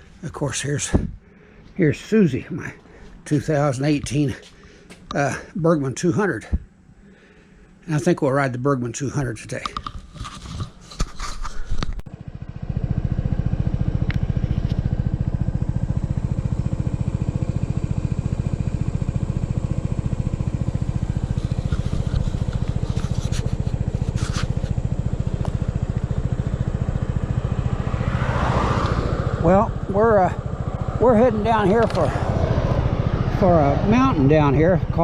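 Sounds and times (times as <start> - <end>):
scooter engine running: 11.7 - 35.0.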